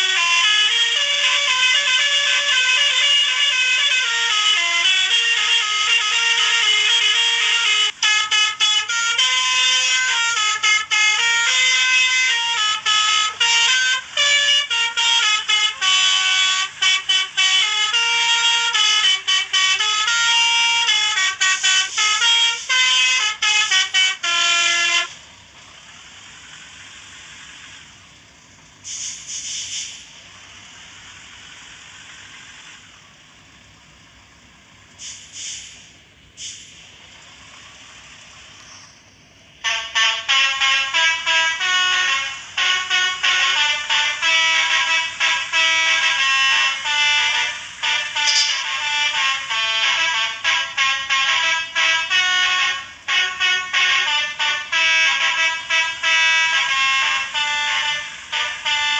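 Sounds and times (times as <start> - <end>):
multi-tone melody horn: 0.0 - 25.4, 39.6 - 58.9
low background noise: 0.0 - 58.9
hiss bursts: 19.7 - 33.2, 34.8 - 39.4, 40.6 - 50.6, 52.1 - 58.9.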